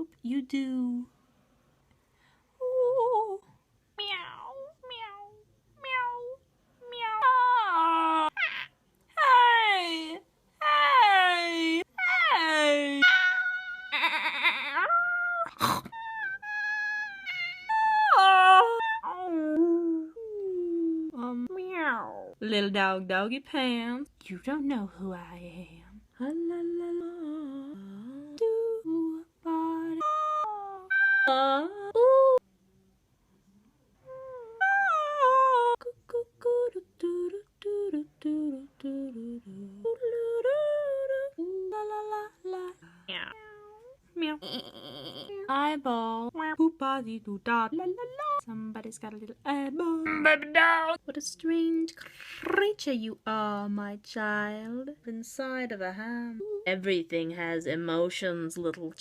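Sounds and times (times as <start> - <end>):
woman humming: 2.6 - 3.4, 9.2 - 22.4, 26.2 - 32.4, 34.0 - 46.4, 49.7 - 50.5, 56.4 - 56.7
woman squealing and whimpering: 7.0 - 9.8, 10.6 - 20.8, 44.4 - 45.5.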